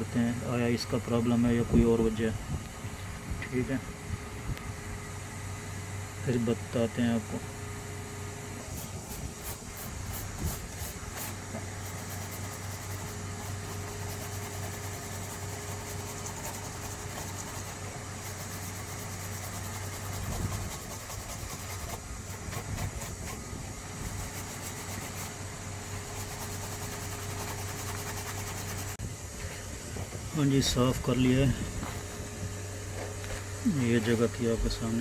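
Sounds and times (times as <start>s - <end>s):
machine hum: 0.0s - 35.0s
even hiss: 33.4s - 35.0s.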